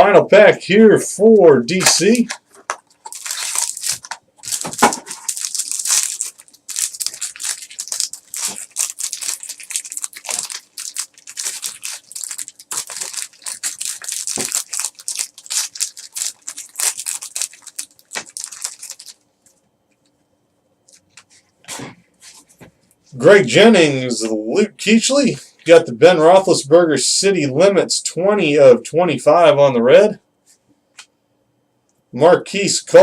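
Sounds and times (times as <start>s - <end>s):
wrapper tearing and crinkling: 1.8s - 19.2s.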